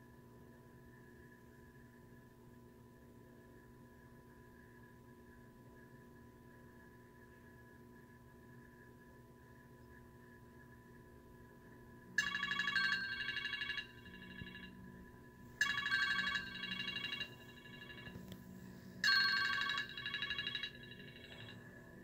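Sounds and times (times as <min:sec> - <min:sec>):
electronic telephone ringtone: 0:12.2 - 0:14.9, 0:15.6 - 0:22.0.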